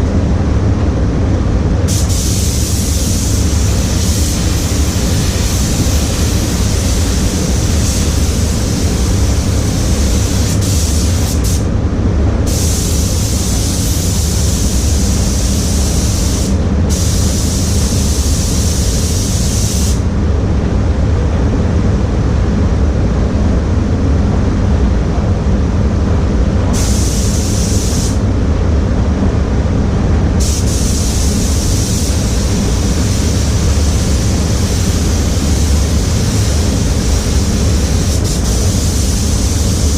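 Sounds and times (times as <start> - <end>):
booth fans rumbling: 0.0 - 39.9
spray gun hissing: 1.9 - 11.7, 12.5 - 20.0, 26.7 - 28.2, 30.4 - 39.9.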